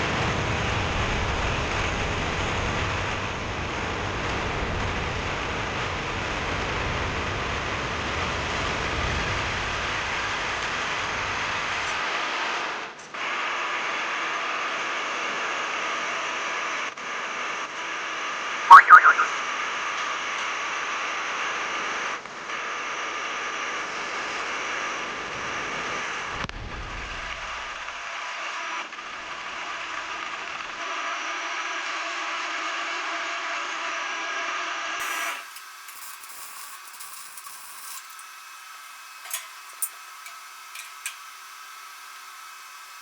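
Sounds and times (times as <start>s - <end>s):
shop noise hiss: 35.0s - 43.0s
steel ringing: 35.0s - 43.0s.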